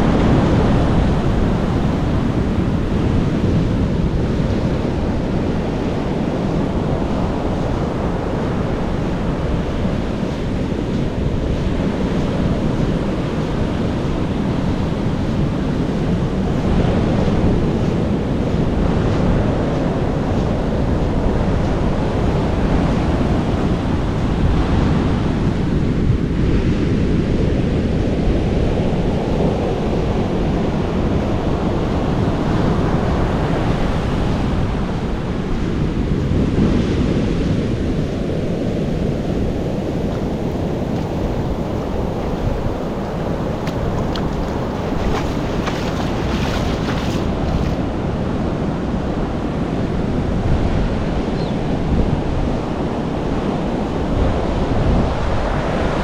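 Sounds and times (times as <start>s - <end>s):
wind buffeting microphone: 0.0s - 56.0s
surf washing against rocks: 38.1s - 49.4s.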